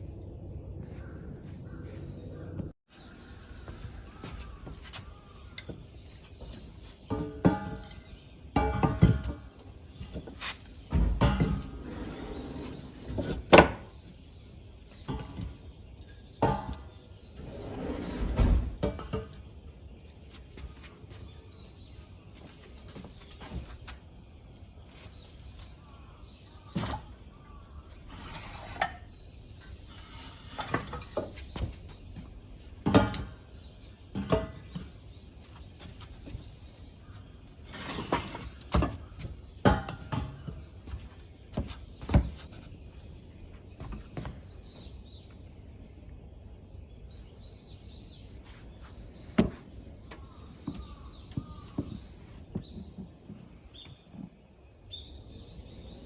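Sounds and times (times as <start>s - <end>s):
birds chirping faintly: 0.0s - 56.0s.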